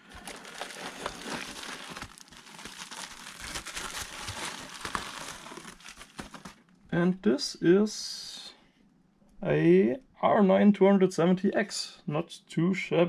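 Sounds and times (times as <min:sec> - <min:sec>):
packaging crinkling and rustling: 0:00.0 - 0:06.7.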